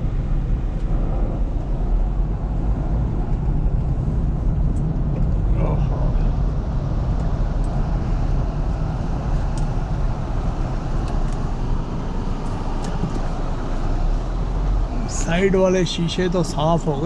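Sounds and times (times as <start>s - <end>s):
road and engine rumble in car: 0.0s - 17.0s.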